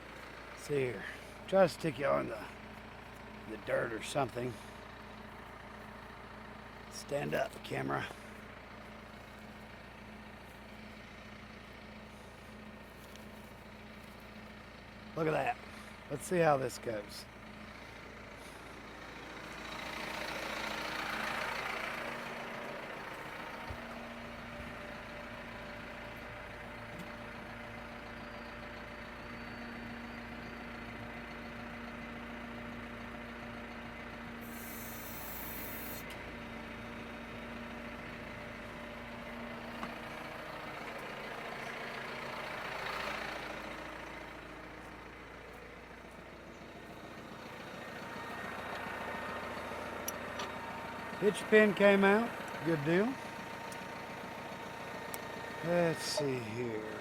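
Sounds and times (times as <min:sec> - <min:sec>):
tractor engine idling: 0:00.0 - 0:57.0
brief high hiss: 0:34.5 - 0:36.0.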